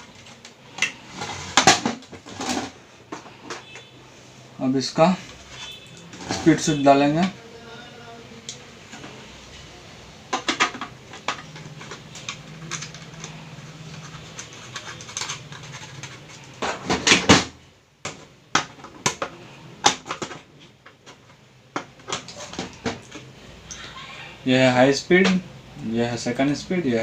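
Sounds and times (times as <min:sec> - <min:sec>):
hard plastic parts clicking and scraping: 0:00.0 - 0:03.9, 0:05.2 - 0:07.4, 0:10.3 - 0:23.3.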